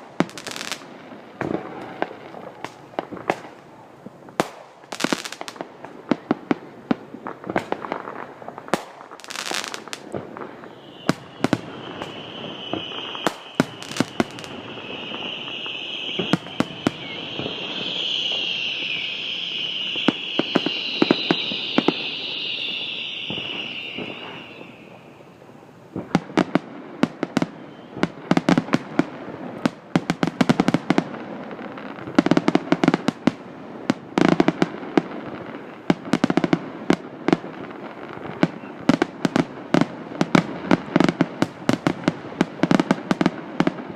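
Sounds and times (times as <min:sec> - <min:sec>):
fireworks bangs: 0:00.0 - 0:03.8, 0:04.4 - 0:43.9
high hiss: 0:09.2 - 0:26.0.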